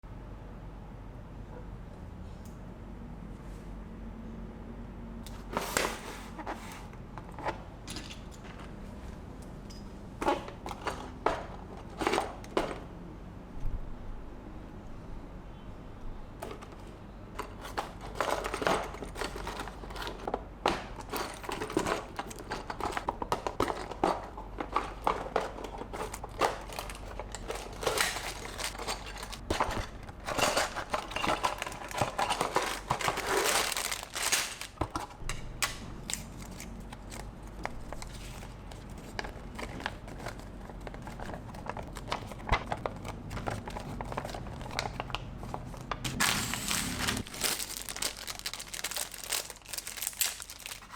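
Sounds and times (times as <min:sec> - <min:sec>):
plastic packaging crinkling: 0:25.1 - 0:34.8, 0:36.0 - 0:50.9.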